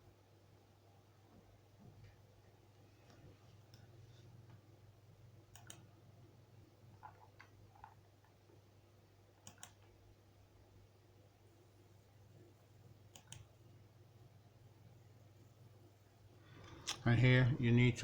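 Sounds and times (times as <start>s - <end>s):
low electrical hum: 0.0s - 18.0s
faint clicks: 5.5s - 5.9s, 9.4s - 10.0s, 13.1s - 13.6s.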